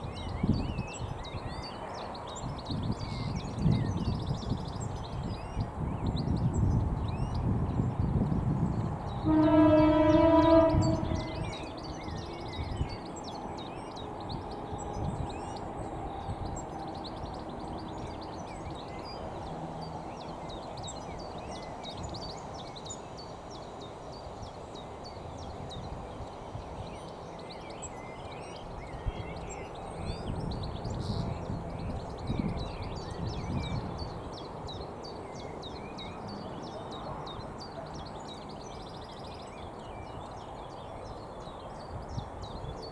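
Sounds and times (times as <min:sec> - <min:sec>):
outdoor background noise: 0:00.0 - 0:42.9
finches twittering: 0:08.7 - 0:42.9
loud horn-like tone: 0:09.2 - 0:12.1.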